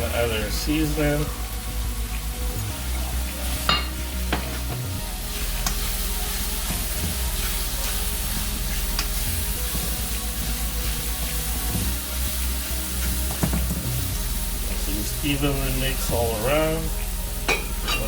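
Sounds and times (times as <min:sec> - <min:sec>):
food sizzling in a frying pan: 0:00.0 - 0:18.0
utensil tapping a pan: 0:13.0 - 0:14.0.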